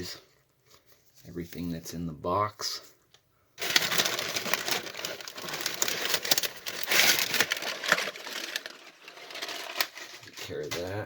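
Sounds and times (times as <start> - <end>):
packing material crinkling: 3.6 - 11.0.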